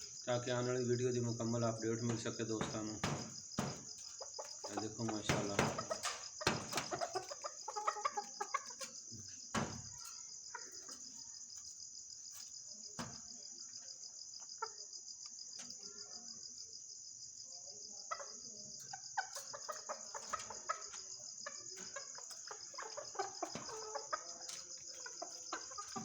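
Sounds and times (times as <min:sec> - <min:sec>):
chicken clucking: 0:00.0 - 0:13.3, 0:17.9 - 0:26.0
high-pitched insect trill: 0:00.0 - 0:26.0
sharp knocks: 0:02.0 - 0:07.2, 0:09.5 - 0:10.1.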